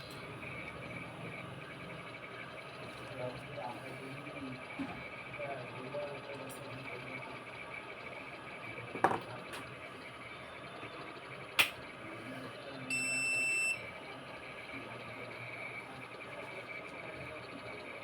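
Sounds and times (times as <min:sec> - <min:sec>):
sharp clicks: 0:11.5 - 0:11.9
high electronic beep: 0:12.9 - 0:13.9.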